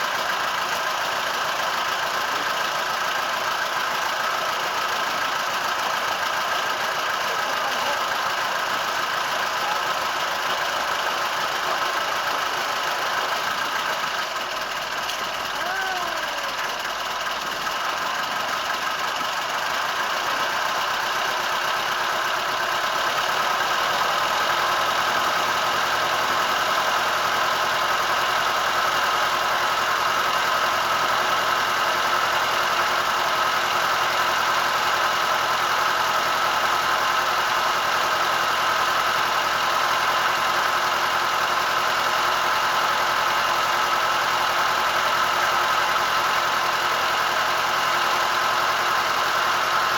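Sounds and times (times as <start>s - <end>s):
boat engine running: 5.1s - 27.4s.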